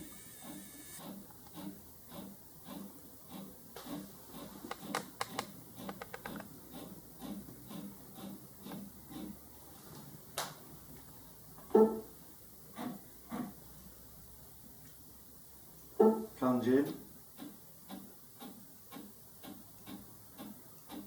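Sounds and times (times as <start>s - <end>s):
robot arm motor pulses: 0.0s - 9.4s
sharp control clicks: 4.6s - 9.2s.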